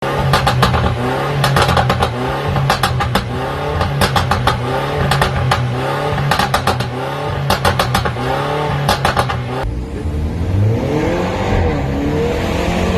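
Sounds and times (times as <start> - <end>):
exhaust crackles and pops: 0.0 - 9.7
car engine revving: 0.0 - 12.9.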